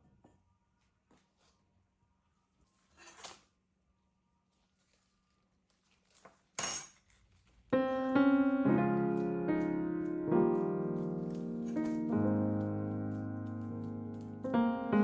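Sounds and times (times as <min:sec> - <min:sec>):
soft piano chords: 0:07.7 - 0:15.0.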